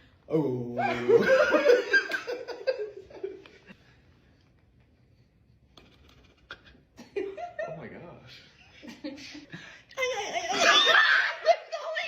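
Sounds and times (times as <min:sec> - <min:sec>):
people laughing: 0:00.8 - 0:03.8.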